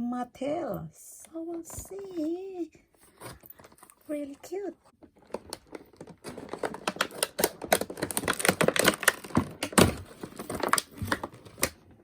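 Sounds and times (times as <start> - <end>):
hands handling plastic packaging: 3.0 - 11.9.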